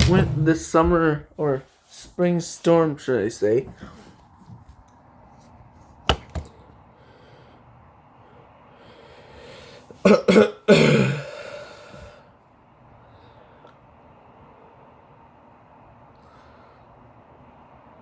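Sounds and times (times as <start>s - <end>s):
person coughing: 10.0s - 11.4s.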